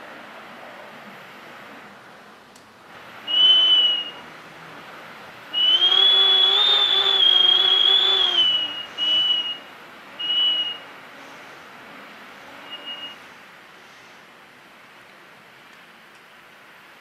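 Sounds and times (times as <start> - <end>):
high wind whistle through gap: 3.0 - 4.4, 5.5 - 11.8, 12.4 - 13.5.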